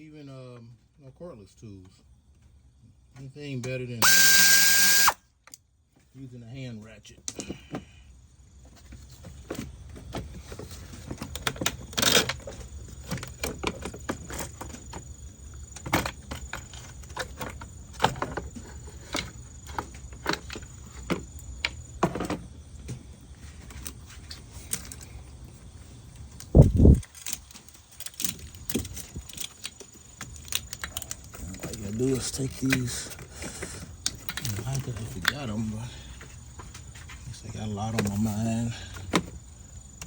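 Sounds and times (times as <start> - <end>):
faint high steady whine: 3.3 - 5.3.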